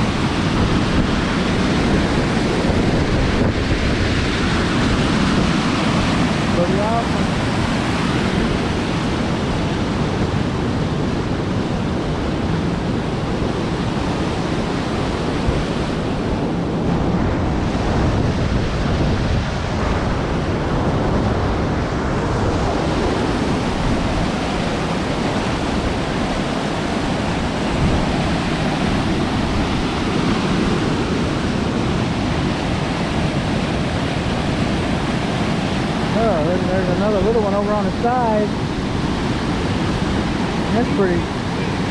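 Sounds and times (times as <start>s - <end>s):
waterfall rushing water: 0.0s - 10.7s, 21.6s - 41.9s.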